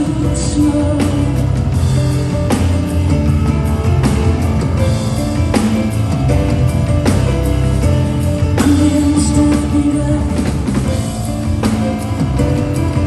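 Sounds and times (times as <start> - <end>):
woman singing: 0.0 - 2.1, 8.4 - 11.0
live rock band: 0.0 - 13.0
drum hits: 1.2 - 9.5.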